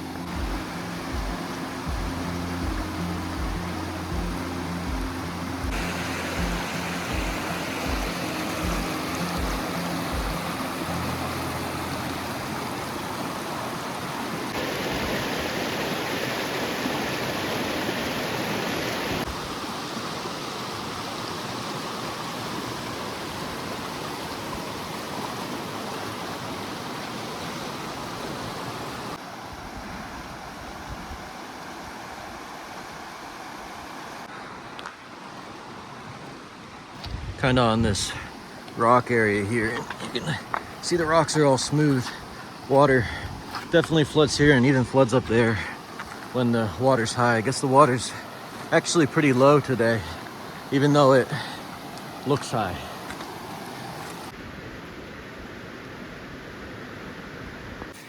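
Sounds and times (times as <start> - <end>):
background music with low beat: 0.0 - 12.2
river water rushing over rocks: 0.0 - 58.0.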